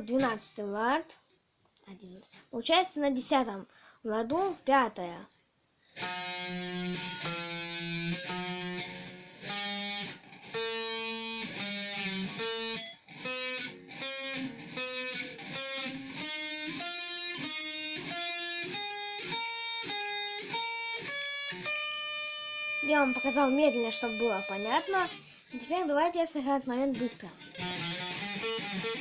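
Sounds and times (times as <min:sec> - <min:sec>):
guitar plucked notes: 0:06.0 - 0:25.9, 0:26.8 - 0:29.0.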